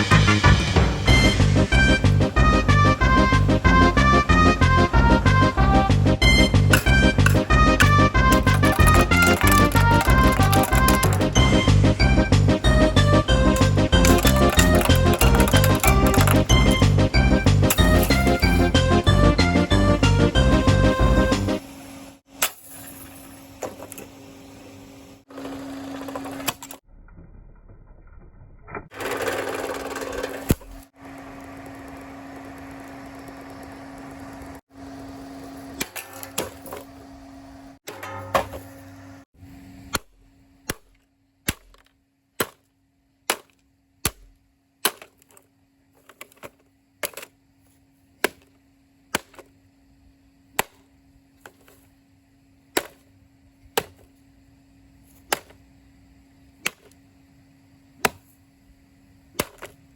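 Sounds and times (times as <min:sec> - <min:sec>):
fan motor hum: 0:00.0 - 0:22.3, 0:22.9 - 0:26.8, 0:28.9 - 0:41.9, 0:43.1 - 0:59.9
rattle and clatter: 0:06.7 - 0:11.4, 0:13.6 - 0:16.9, 0:25.9 - 0:30.9.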